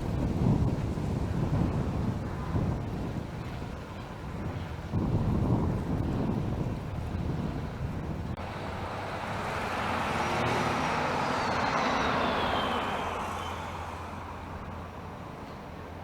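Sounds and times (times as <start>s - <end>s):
vehicle passing by: 8.4s - 15.4s
faint falling squeal: 9.7s - 14.8s.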